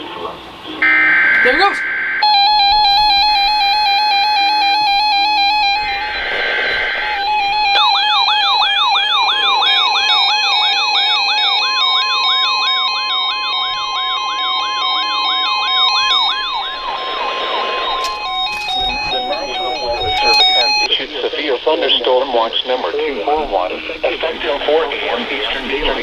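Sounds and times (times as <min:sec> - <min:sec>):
steady alert tone: 0:00.8 - 0:08.0
data burst: 0:00.8 - 0:20.9
electronic siren sweeping upward: 0:00.8 - 0:20.9.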